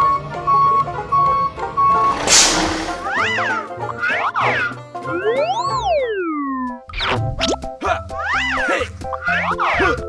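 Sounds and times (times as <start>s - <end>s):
cheerful background music: 0.1s - 10.0s
cartoon swooping glide: 2.0s - 6.2s.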